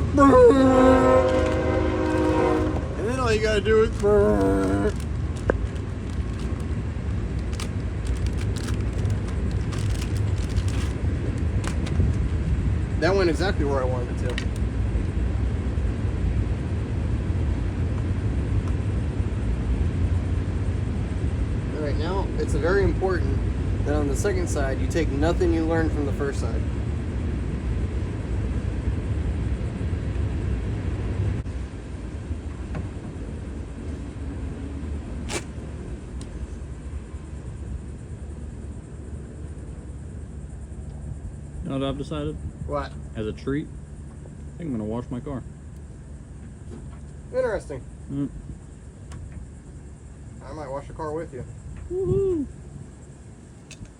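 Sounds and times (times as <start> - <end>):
train rumbling: 0.0 - 41.3.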